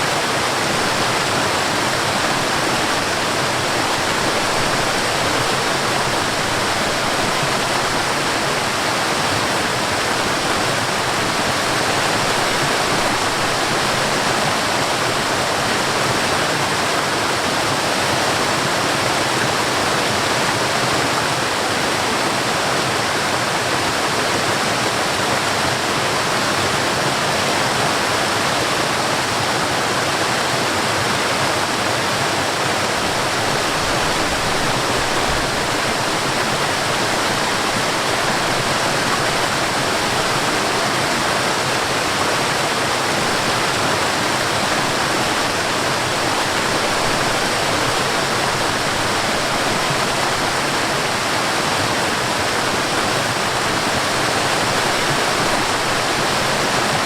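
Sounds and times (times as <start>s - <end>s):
water rushing over small waterfall: 0.0s - 57.0s.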